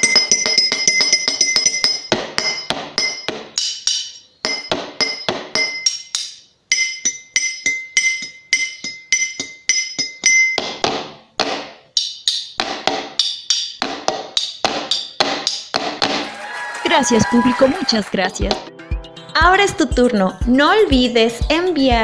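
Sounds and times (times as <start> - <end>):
percussion on kitchen utensils: 0.0 - 16.4.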